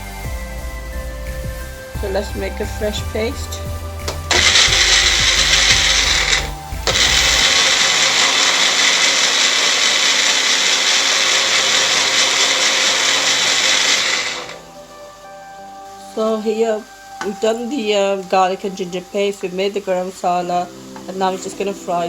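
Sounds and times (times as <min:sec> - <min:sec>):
electric blender whining: 0:04.0 - 0:14.7.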